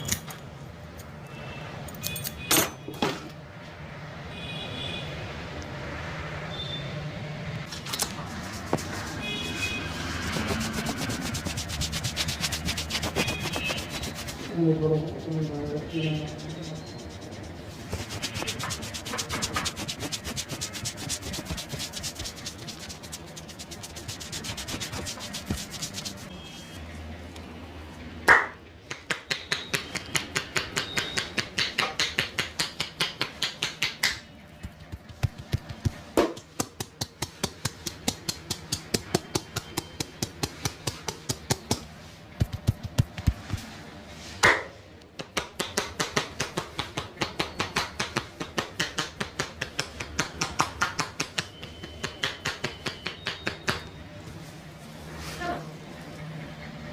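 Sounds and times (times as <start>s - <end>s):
hands rubbing on head: 7.8s - 26.3s
hands striking rhythmically: 10.2s - 14.4s, 28.3s - 43.6s, 45.2s - 53.8s.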